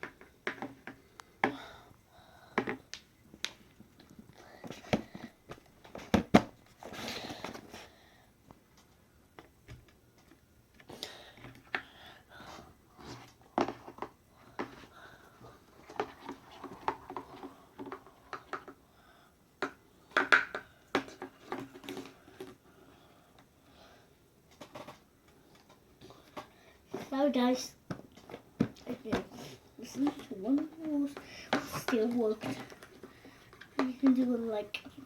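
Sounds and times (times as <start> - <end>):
hands handling plastic tubs and tools: 12.5 - 18.8, 19.6 - 22.6, 24.5 - 35.0.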